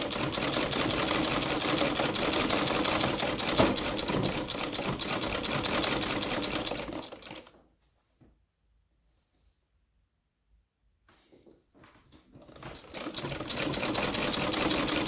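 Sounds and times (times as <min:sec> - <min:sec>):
sewing machine clattering: 0:00.0 - 0:07.6, 0:12.4 - 0:15.0.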